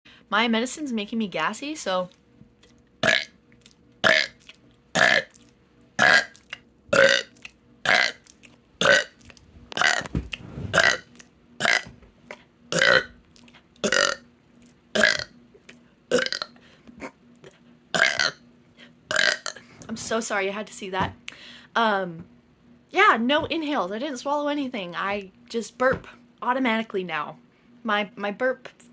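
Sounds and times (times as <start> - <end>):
woman burping: 3.0 - 3.3, 4.0 - 4.4, 5.0 - 5.3, 6.0 - 6.3, 6.9 - 7.3, 7.9 - 8.2, 8.8 - 9.2, 9.8 - 10.1, 11.6 - 11.9, 12.7 - 13.1, 13.8 - 14.2, 15.0 - 15.3, 16.1 - 17.1, 18.0 - 18.4, 19.1 - 19.7.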